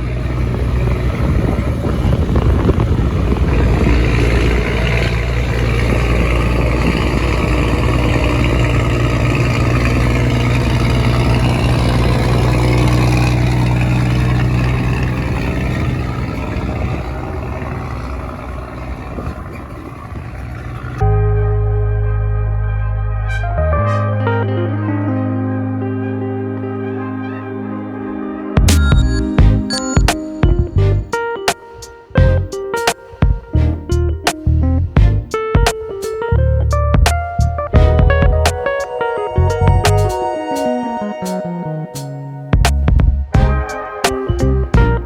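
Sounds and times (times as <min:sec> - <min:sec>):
truck diesel engine rumbling: 0:00.0 - 0:28.2, 0:28.8 - 0:31.3, 0:32.2 - 0:32.7, 0:33.4 - 0:45.0
music: 0:21.0 - 0:45.0.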